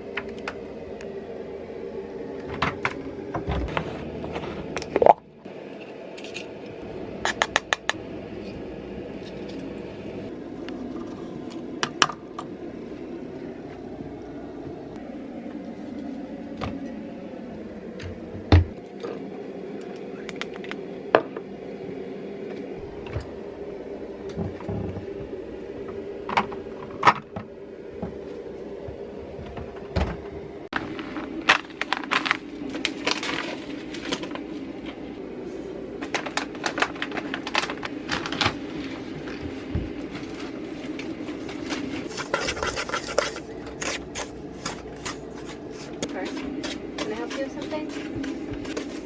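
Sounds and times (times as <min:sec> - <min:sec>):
steady low hum: 0:00.0 - 0:49.0
utensils clinking against bowls: 0:42.1 - 0:49.0.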